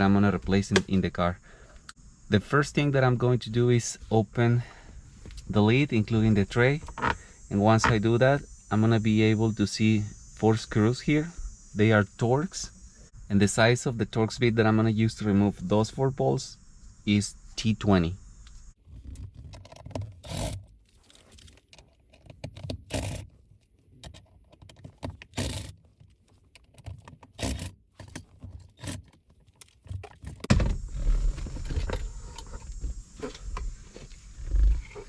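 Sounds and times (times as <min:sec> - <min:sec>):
handling noise with low thumps: 0:24.0 - 0:35.0.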